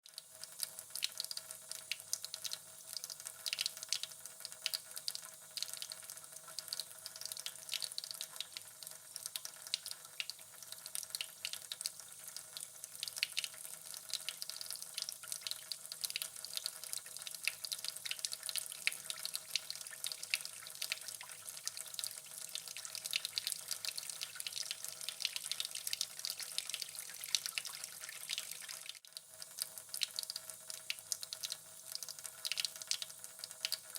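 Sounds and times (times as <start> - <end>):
water dripping: 0.0 - 33.9.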